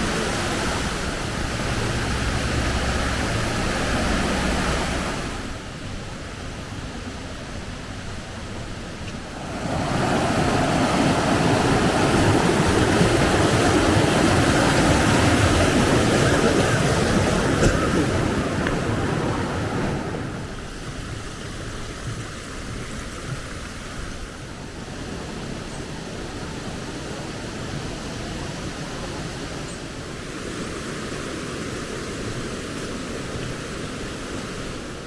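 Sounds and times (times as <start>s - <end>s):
waterfall rushing: 0.0s - 5.7s, 7.7s - 23.9s.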